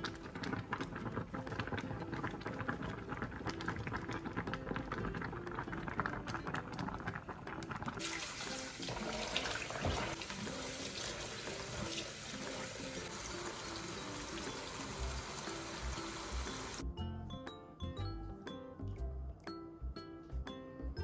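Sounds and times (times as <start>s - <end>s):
background music: 0.0s - 21.0s
tap running into a sink: 8.0s - 12.8s.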